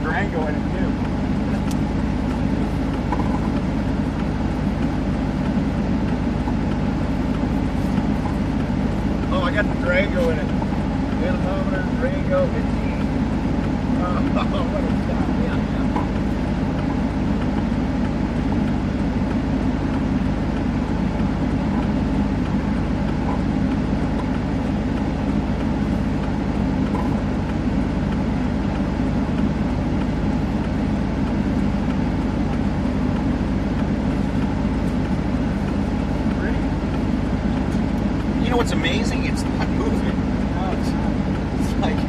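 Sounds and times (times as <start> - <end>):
low hums: 0.0 - 42.0
vehicle engine idling: 0.0 - 42.0.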